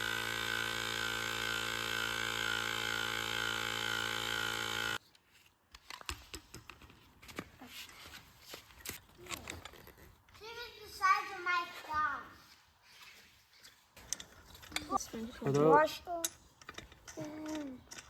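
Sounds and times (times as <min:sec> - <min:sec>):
electric air pump running: 0:00.0 - 0:05.0.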